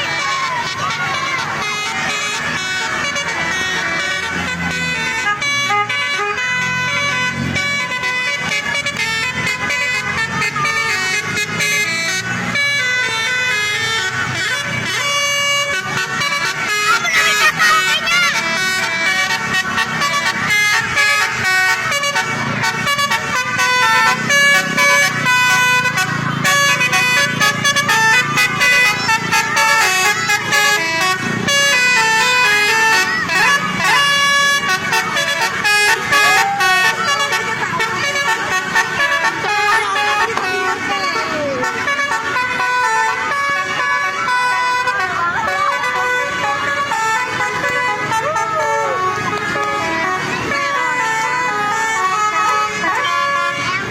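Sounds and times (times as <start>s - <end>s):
musical bus horn: 0.0s - 53.9s.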